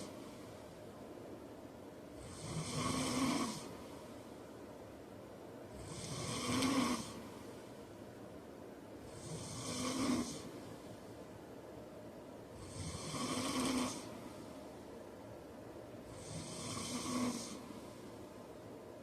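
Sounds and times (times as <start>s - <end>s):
quiet breathing: 0.0s - 19.0s
man snoring: 2.2s - 3.7s, 5.8s - 7.2s, 9.1s - 10.5s, 12.6s - 14.1s, 16.1s - 17.7s.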